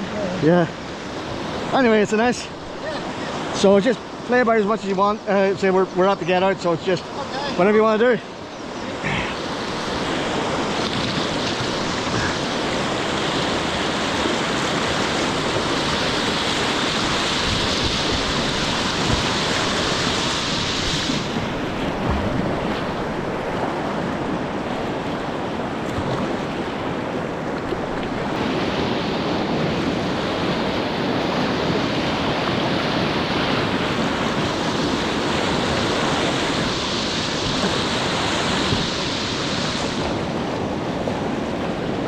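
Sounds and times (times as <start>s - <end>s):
river water rushing over rapid: 5.6s - 42.0s
wind on microphone: 9.0s - 42.0s.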